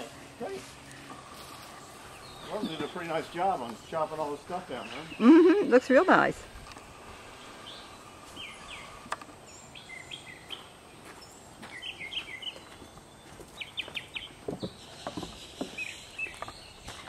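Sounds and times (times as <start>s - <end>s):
outdoor background noise: 0.0s - 17.0s
songbirds chirping: 0.0s - 17.0s
soft footsteps: 0.4s - 5.2s, 10.4s - 17.0s.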